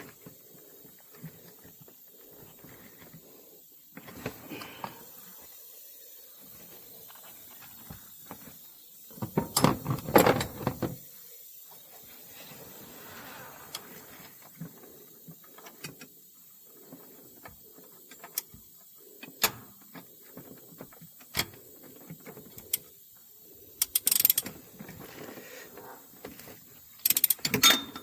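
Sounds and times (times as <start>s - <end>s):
rapid ratchet clicking: 23.7s - 24.5s, 27.0s - 27.8s
metal clicks: 23.8s - 24.6s, 27.0s - 28.0s.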